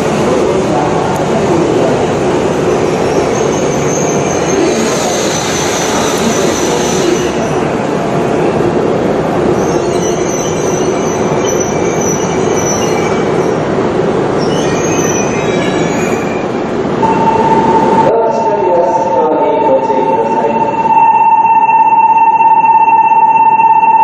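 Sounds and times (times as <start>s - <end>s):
train rumbling on rails: 0.0s - 22.1s
high-pitched wheel squeals: 3.0s - 7.5s, 9.5s - 13.3s, 14.4s - 17.2s.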